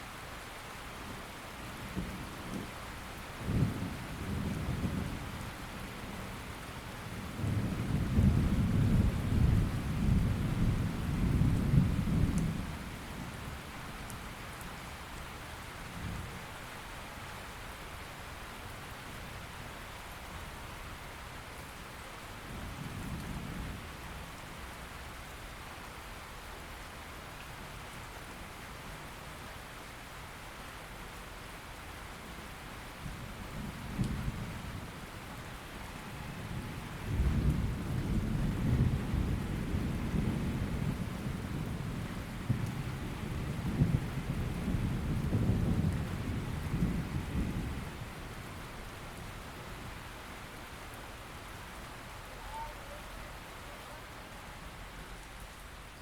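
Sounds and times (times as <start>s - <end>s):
steady rain falling: 0.0s - 56.0s
thunder rumbling: 36.1s - 48.5s.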